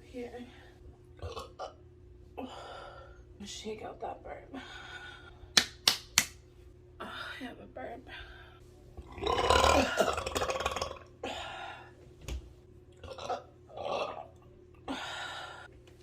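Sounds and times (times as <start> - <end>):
woman burping loudly: 9.0 - 11.3, 13.0 - 14.4.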